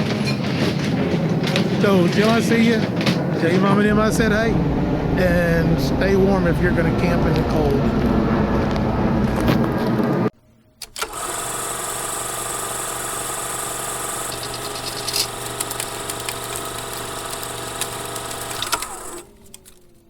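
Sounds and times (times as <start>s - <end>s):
road noise: 0.0s - 10.3s.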